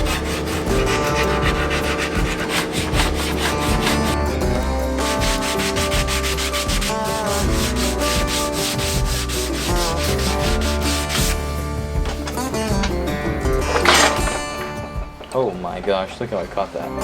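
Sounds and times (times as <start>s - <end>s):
sanding wood rasping strokes: 0.0s - 12.5s.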